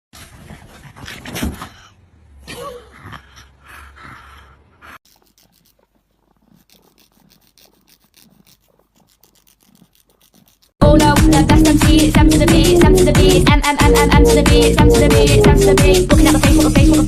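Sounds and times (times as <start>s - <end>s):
dog panting: 2.9s - 10.7s.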